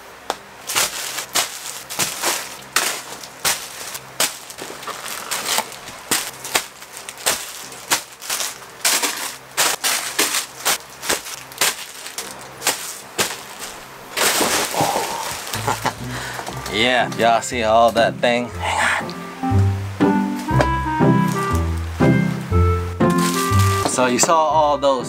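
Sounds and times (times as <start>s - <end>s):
crackling snaps and rustles: 0.2s - 17.2s, 21.2s - 22.4s, 23.0s - 24.2s.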